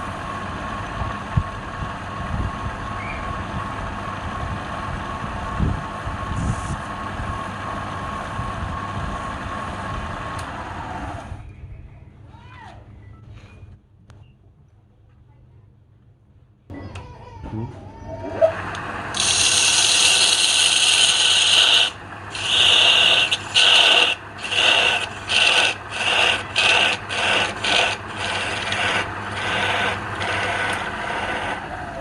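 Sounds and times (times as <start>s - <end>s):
low motor hum: 0.0s - 14.4s, 15.9s - 32.0s
abrasive rubbing on wood: 19.2s - 31.6s.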